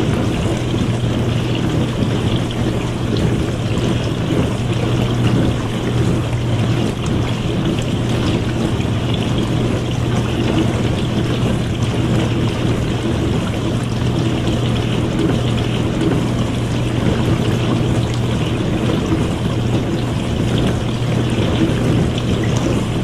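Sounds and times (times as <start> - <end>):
low motor hum: 0.0 - 23.0
water splashing in dishwasher: 0.0 - 23.0.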